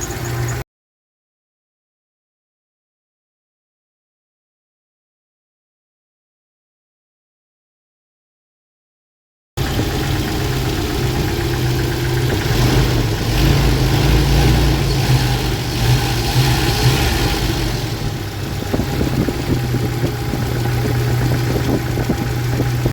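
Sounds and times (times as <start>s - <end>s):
car engine idling: 0.0s - 0.6s, 9.6s - 22.9s.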